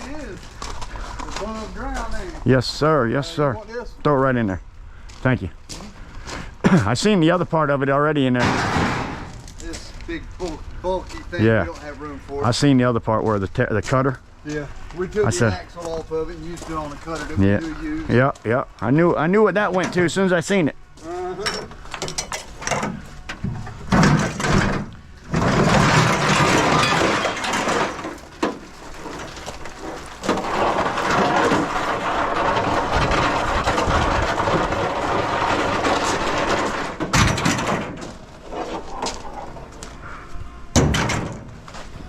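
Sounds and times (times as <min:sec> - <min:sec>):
rough scraping and clatter: 0:14.0 - 0:19.1, 0:21.5 - 0:40.0
scrap metal clanking: 0:21.5 - 0:39.7.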